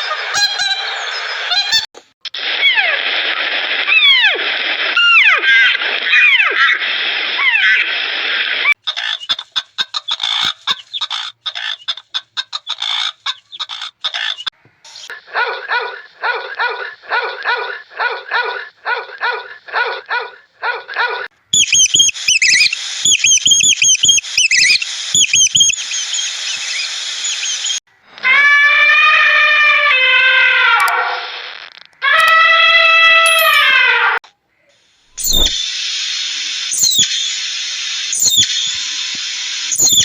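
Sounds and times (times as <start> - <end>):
fast chattering animal call: 8.8 - 14.5, 21.6 - 27.8, 35.2 - 35.7, 36.7 - 37.4, 38.1 - 38.9, 39.7 - 40.0
short repeated animal calls: 34.5 - 35.7, 36.7 - 37.2, 38.2 - 38.7, 39.7 - 40.0
high chirping notes: 35.2 - 35.6.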